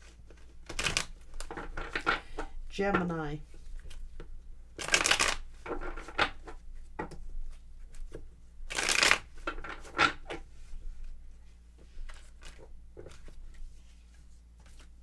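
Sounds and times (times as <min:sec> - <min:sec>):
cards being shuffled: 0:00.1 - 0:04.0, 0:04.8 - 0:05.4, 0:08.0 - 0:09.3.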